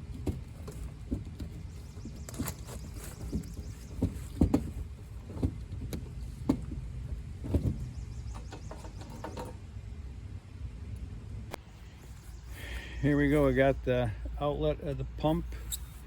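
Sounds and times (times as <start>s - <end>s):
irregular knocks and clunks: 0.0s - 9.6s
steady low rumble: 0.0s - 16.0s.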